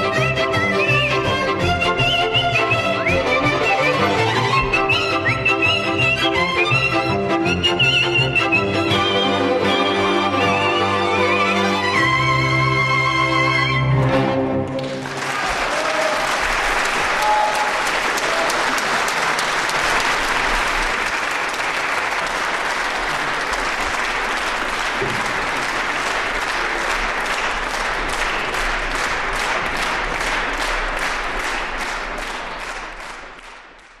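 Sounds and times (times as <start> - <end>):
audience applauding: 14.6 - 34.0.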